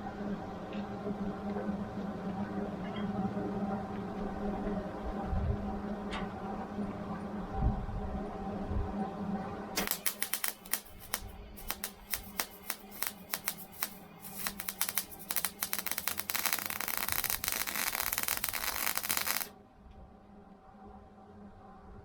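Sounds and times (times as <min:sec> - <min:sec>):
welding arc crackling: 0:09.8 - 0:19.5.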